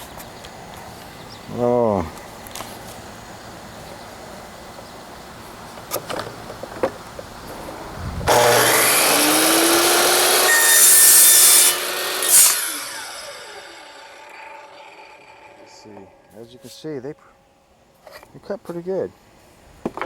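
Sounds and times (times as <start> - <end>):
saw cutting through plastic gutter: 8.3 - 15.8.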